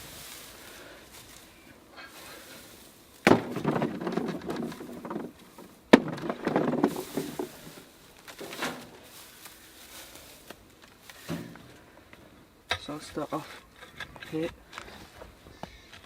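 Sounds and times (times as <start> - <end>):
fork scraping through mulch: 0.0 - 3.2, 4.1 - 11.7.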